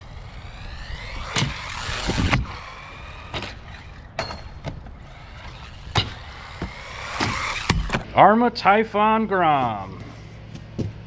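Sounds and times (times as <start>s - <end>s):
electric motor whining: 0.0s - 8.2s.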